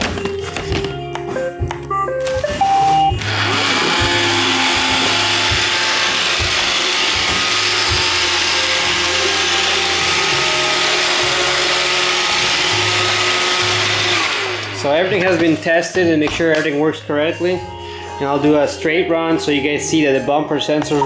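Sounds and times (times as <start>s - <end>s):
robot vacuum whirring: 2.5s - 15.1s.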